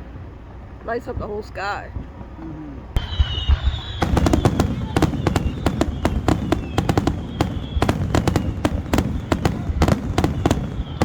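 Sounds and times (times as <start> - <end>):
steady low rumble: 0.0 - 11.0
fireworks bangs and crackles: 3.0 - 11.0.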